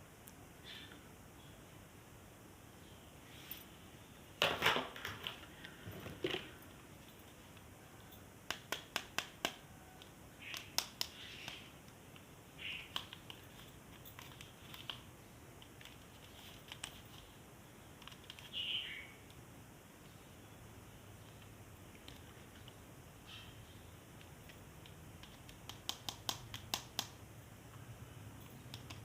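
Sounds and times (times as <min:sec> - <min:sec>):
sharp plastic clicks: 0:08.4 - 0:13.4, 0:24.2 - 0:27.2.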